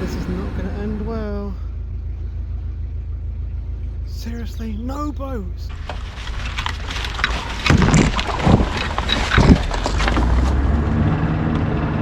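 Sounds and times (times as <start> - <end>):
boat engine humming: 0.0 - 12.0
wind buffeting microphone: 5.7 - 11.0.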